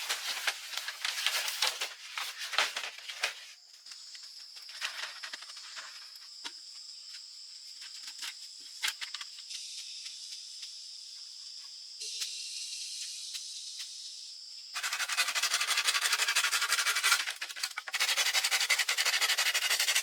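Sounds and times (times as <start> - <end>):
high-pitched insect drone: 12.0 - 16.9.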